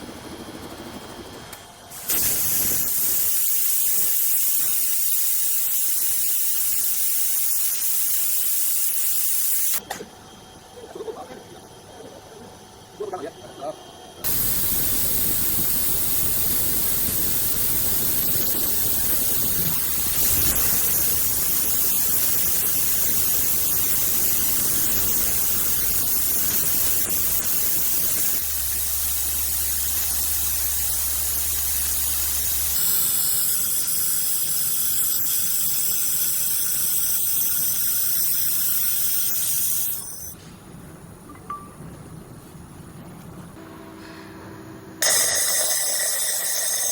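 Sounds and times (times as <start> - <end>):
loud hiss of gas jet: 1.9 - 9.8, 14.3 - 35.8.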